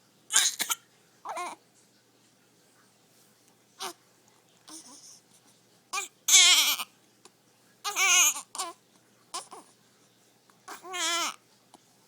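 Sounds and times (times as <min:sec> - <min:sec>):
baby babbling and crying: 0:00.3 - 0:01.6, 0:04.7 - 0:05.1, 0:06.0 - 0:06.9, 0:07.8 - 0:09.7, 0:10.7 - 0:11.4.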